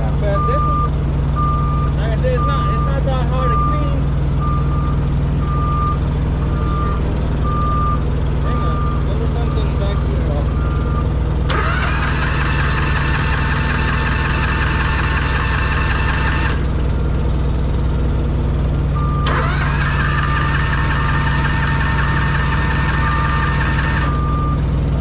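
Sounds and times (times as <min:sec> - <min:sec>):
low diesel idle hum: 0:00.0 - 0:25.0
electric starter cranking motor: 0:11.5 - 0:16.8, 0:19.2 - 0:24.4.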